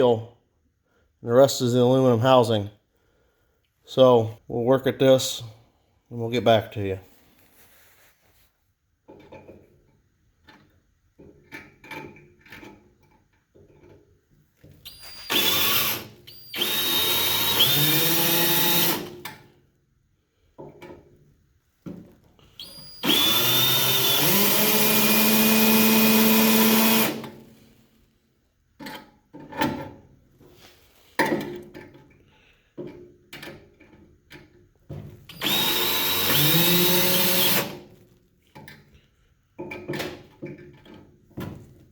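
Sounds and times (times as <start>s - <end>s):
electric drill running: 14.9s - 19.2s, 22.6s - 27.4s, 35.3s - 37.8s.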